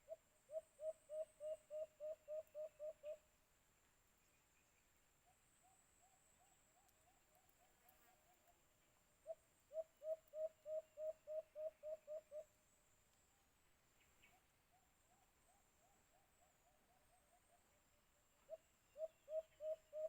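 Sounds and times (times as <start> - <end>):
dove hooting coos: 0.1 - 3.2, 9.2 - 12.5, 18.5 - 20.0.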